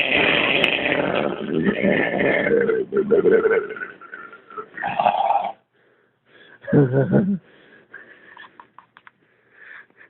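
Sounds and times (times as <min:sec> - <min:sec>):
man belching: 0:00.0 - 0:05.6
faint clicks: 0:08.8 - 0:09.2.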